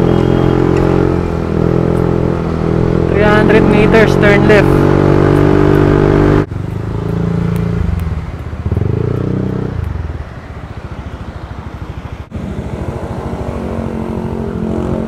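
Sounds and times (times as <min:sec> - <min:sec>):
scooter engine running: 0:10.8 - 0:15.0.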